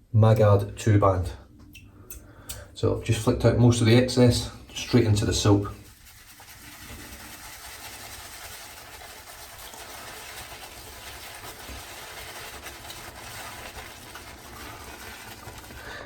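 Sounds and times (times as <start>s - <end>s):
shaving brush swishing in soap: 4.8s - 16.0s.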